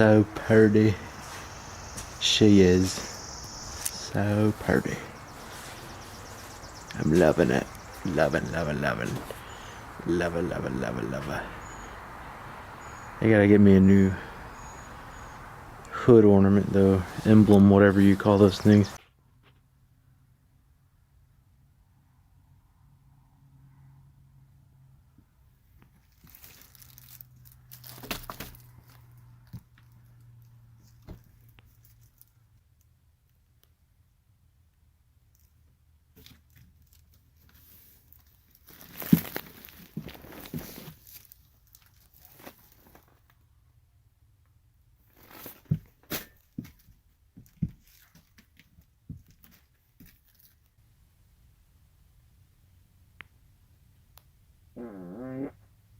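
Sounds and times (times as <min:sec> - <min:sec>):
rustling and crinkling: 0:00.4 - 0:12.0, 0:25.8 - 0:32.4, 0:35.3 - 0:43.4, 0:45.0 - 0:50.8.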